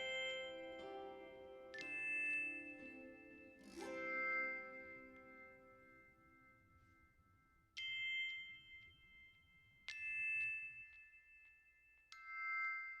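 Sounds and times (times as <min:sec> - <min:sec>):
bell-like chime notes: 0:00.0 - 0:07.1.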